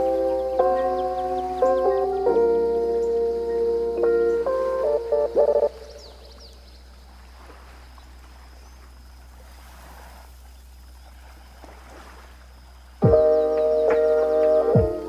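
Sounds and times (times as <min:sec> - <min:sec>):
sea waves washing on beach: 0:07.1 - 0:13.0.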